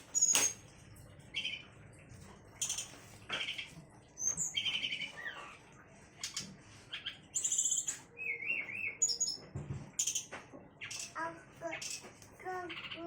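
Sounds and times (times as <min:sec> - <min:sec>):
songbird chirping and trilling: 0:00.0 - 0:00.6, 0:01.2 - 0:01.8, 0:02.6 - 0:13.0.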